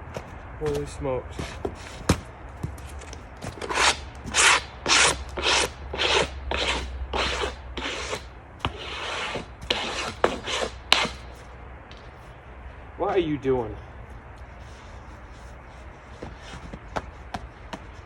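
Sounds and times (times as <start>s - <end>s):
rasping strokes over wood: 3.0s - 11.4s.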